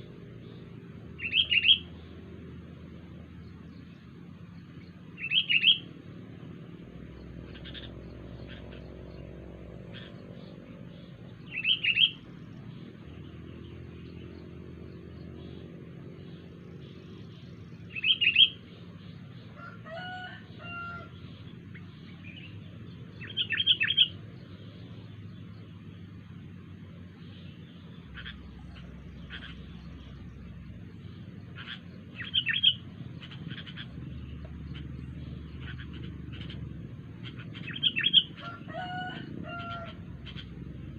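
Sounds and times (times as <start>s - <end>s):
faint bird chirps: 0.0s - 40.9s
low steady hum: 0.0s - 40.9s
bird giving loud calls: 28.1s - 30.1s, 31.5s - 40.8s.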